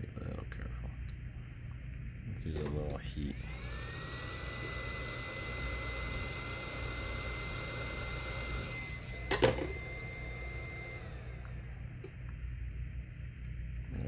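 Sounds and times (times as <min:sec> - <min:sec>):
heat gun whining: 0:02.6 - 0:12.3.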